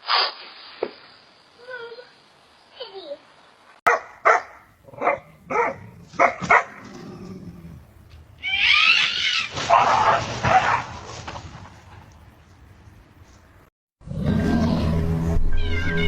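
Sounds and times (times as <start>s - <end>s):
dog barking: 3.9s - 6.8s
noisy commotion with wavering cries: 8.4s - 10.7s, 14.1s - 16.0s.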